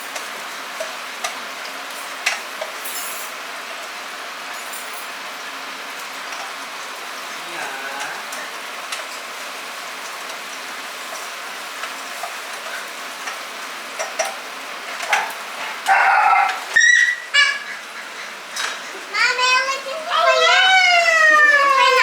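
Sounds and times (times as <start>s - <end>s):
food sizzling in a pan: 0.0s - 22.0s
child's high-pitched voice: 19.0s - 22.0s.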